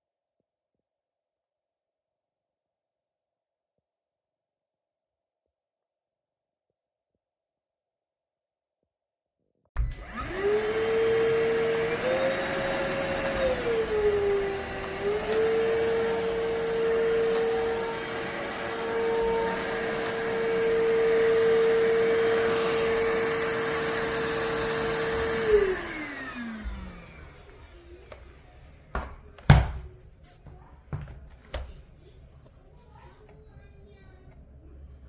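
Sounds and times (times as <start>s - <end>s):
vacuum motor spinning down: 9.8s - 28.0s
vacuum cleaner motor whine: 9.8s - 28.6s.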